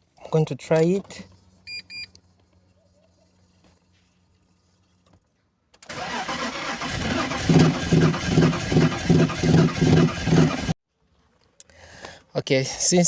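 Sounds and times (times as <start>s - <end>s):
car engine cranking: 5.8s - 10.8s.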